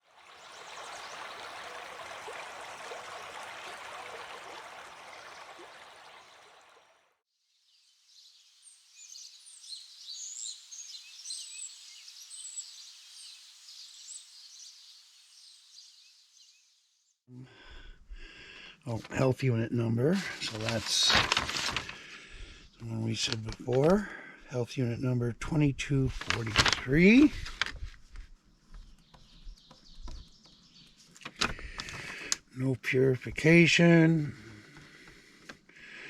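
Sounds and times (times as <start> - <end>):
running water rushing: 0.0 - 7.2, 20.2 - 22.0, 26.1 - 27.7.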